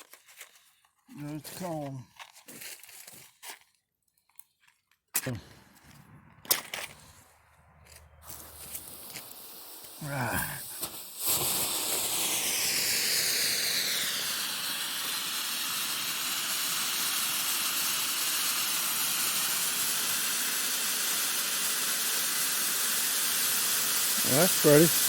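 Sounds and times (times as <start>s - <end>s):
firework fountain hissing: 8.1s - 25.0s.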